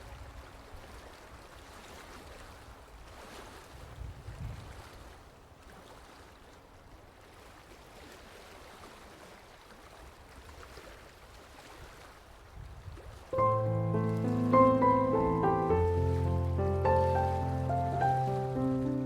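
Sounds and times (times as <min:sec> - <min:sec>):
sea waves lapping at shore: 0:00.0 - 0:19.0
music with sustained notes: 0:13.4 - 0:19.0.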